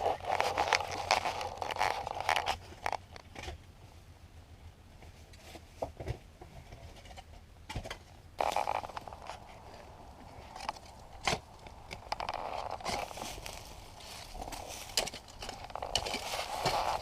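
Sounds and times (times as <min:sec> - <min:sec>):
digging scrapes and knocks: 0:00.0 - 0:03.6, 0:06.6 - 0:17.0
footsteps on rubble: 0:08.4 - 0:17.0.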